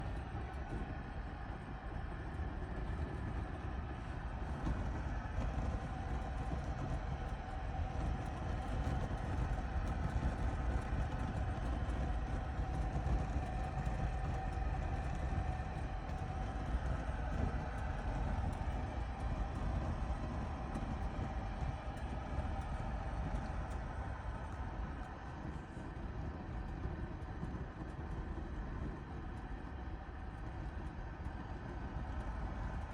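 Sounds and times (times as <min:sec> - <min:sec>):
wood fire rumbling: 0:00.1 - 0:32.9
fire crackles: 0:02.5 - 0:32.9.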